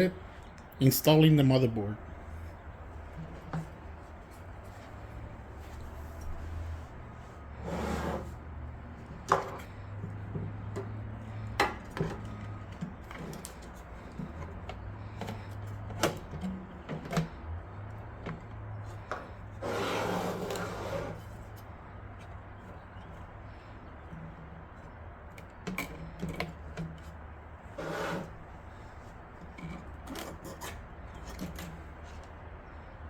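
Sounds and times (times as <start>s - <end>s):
scraping rubs: 27.7s - 28.5s.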